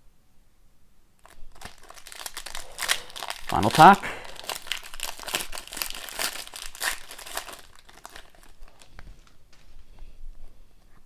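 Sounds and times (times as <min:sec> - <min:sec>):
wrapper tearing and crinkling: 0:01.2 - 0:09.4.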